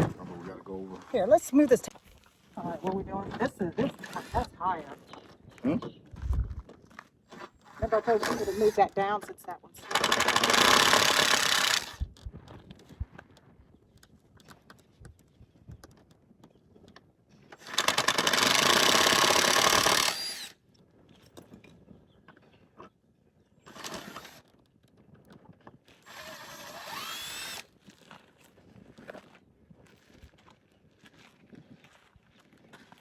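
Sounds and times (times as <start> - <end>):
power saw cutting wood: 3.9 - 4.6, 7.8 - 9.0, 9.8 - 12.0, 17.6 - 20.6, 23.7 - 24.4, 26.1 - 27.6.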